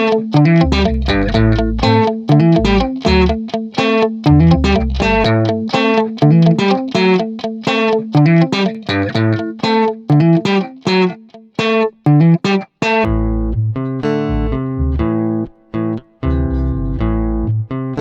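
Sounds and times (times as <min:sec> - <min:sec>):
plucked guitar melody: 0:00.0 - 0:18.0
bass line: 0:00.4 - 0:03.4, 0:04.3 - 0:05.6, 0:13.1 - 0:17.8.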